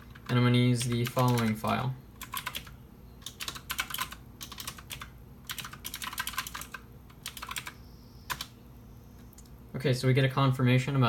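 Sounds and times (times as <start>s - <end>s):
computer keyboard typing: 0.0s - 8.6s.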